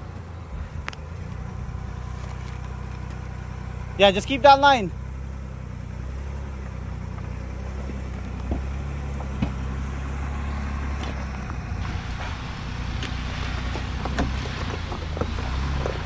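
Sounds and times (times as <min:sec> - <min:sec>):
engine running at low revs: 0:00.0 - 0:16.0.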